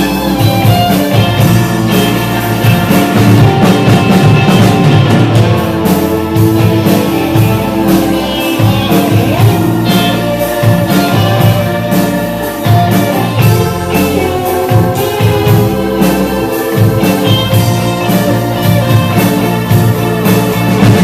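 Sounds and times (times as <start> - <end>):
guitar: 0.0 - 21.0
steady drum beat: 0.0 - 21.0
person singing: 6.8 - 21.0.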